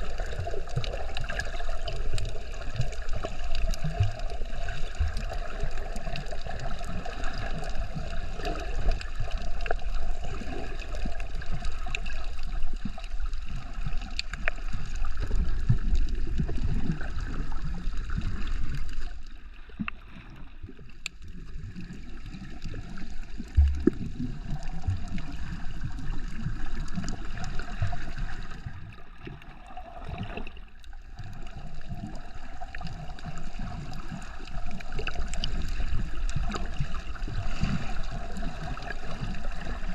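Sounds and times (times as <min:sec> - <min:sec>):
water sloshing and gurgling: 0:00.0 - 0:39.9.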